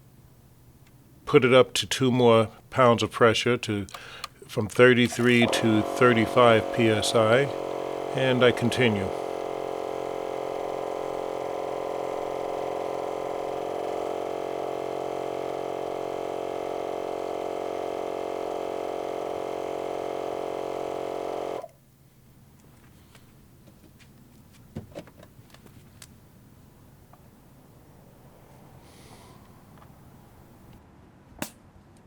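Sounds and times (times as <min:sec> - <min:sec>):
air compressor droning hum: 0:03.7 - 0:21.7, 0:27.3 - 0:30.8.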